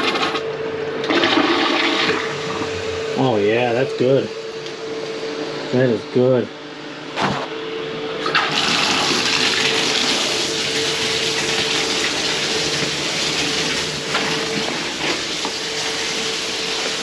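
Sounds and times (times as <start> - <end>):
toilet water rushing: 0.0 - 0.4, 1.0 - 3.3, 8.2 - 17.0
toilet flush click: 1.0 - 2.2, 8.2 - 17.0.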